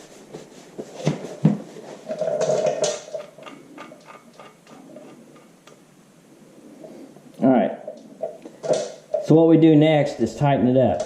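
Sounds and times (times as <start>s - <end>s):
hands rubbing: 0.0s - 2.4s.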